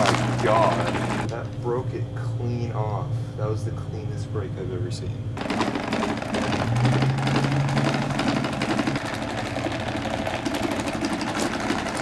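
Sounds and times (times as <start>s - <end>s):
fast clattering rattle: 0.0s - 1.3s, 5.4s - 12.0s
fan motor humming: 0.0s - 12.0s.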